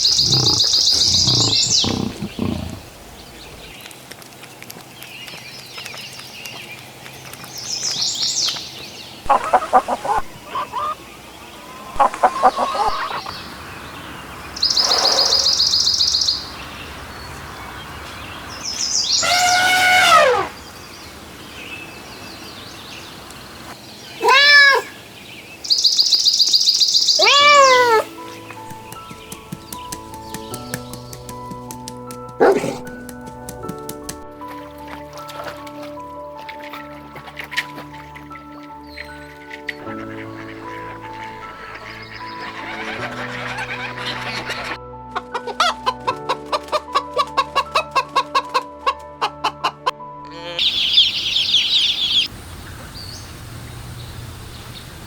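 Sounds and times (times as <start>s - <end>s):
animal calls: 0.0s - 3.8s, 9.3s - 13.4s, 14.6s - 16.3s, 19.1s - 20.6s, 27.2s - 28.9s, 32.3s - 33.0s, 39.8s - 44.8s, 45.4s - 52.3s.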